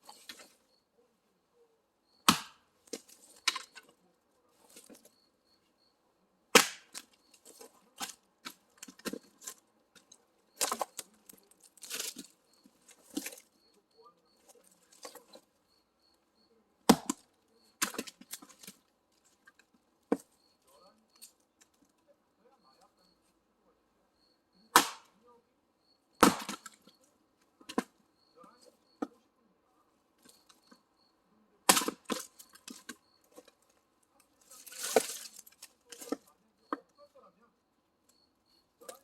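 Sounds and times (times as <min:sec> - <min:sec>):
axe striking firewood: 0:02.2 - 0:03.8, 0:06.5 - 0:07.1, 0:10.6 - 0:11.1, 0:16.8 - 0:18.5, 0:24.7 - 0:25.2, 0:26.2 - 0:26.8, 0:31.6 - 0:33.0.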